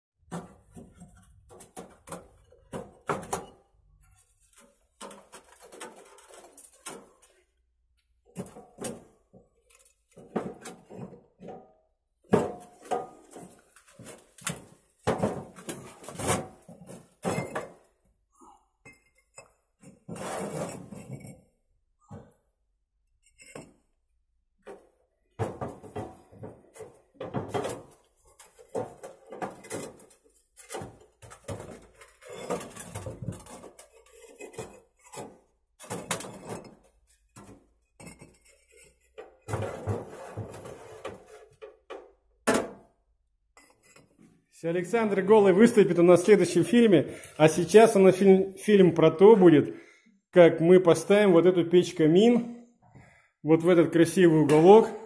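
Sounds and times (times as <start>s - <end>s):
hard objects knocking and clinking: 24.7s - 40.7s.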